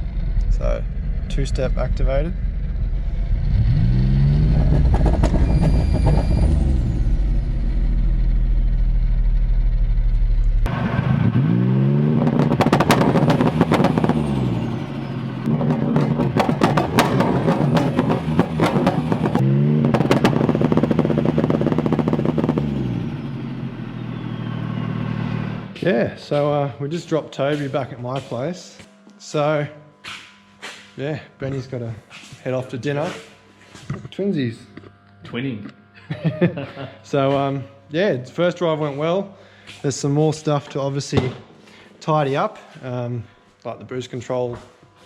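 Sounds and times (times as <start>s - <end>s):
exhaust crackling and popping: 0.0s - 25.8s
car engine revving on limiter: 0.0s - 25.9s.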